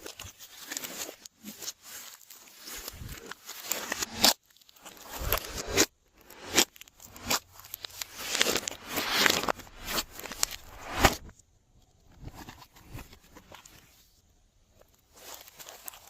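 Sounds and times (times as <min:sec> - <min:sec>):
slime mixed by hand crackling: 0:00.0 - 0:11.9.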